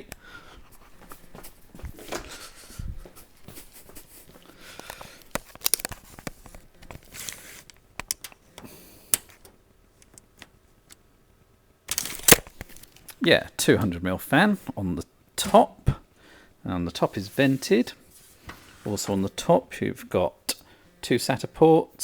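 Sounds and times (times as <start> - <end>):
rustling and scraping: 0.6 - 11.0, 17.0 - 19.3.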